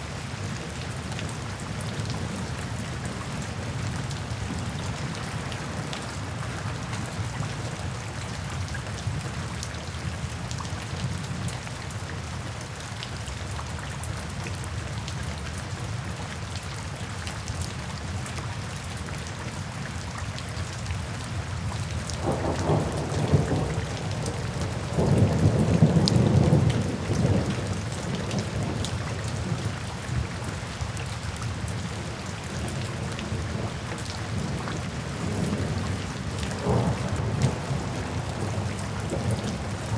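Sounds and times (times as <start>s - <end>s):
steady rain falling: 0.0s - 39.9s
thunder rumbling: 36.6s - 39.9s.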